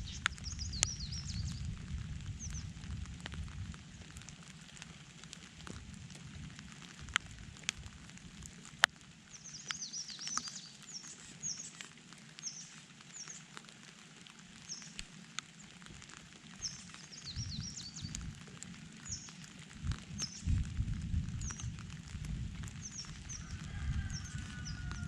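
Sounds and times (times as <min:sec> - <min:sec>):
small birds chirping: 0:00.0 - 0:01.7, 0:02.4 - 0:02.8, 0:09.3 - 0:13.6, 0:14.6 - 0:15.0, 0:16.6 - 0:18.4, 0:19.0 - 0:19.5, 0:20.1 - 0:20.6, 0:21.4 - 0:21.8, 0:22.7 - 0:25.0
raindrop ticks: 0:00.0 - 0:25.0.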